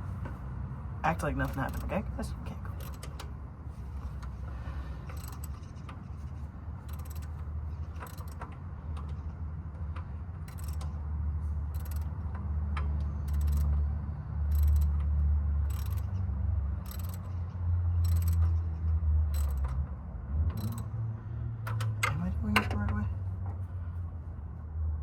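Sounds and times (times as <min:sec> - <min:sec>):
ratchet wrench clicking: 0:02.7 - 0:03.3, 0:05.0 - 0:06.0, 0:06.8 - 0:09.1, 0:10.4 - 0:11.0, 0:11.6 - 0:16.2, 0:16.8 - 0:18.6, 0:19.3 - 0:19.8, 0:20.5 - 0:21.0.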